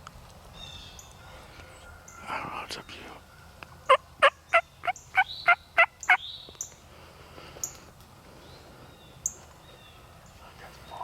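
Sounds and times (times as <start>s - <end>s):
turkey yelping: 3.4s - 6.2s.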